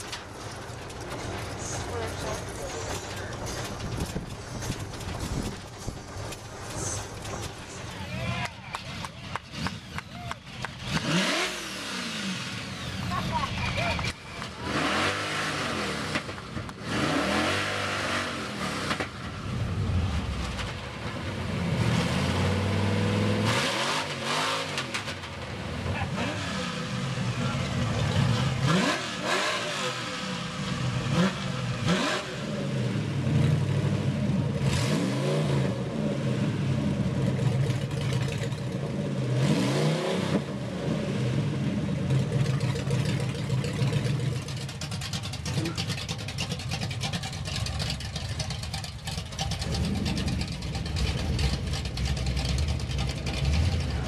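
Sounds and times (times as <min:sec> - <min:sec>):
cars driving past revving: 0:05.2 - 0:44.5.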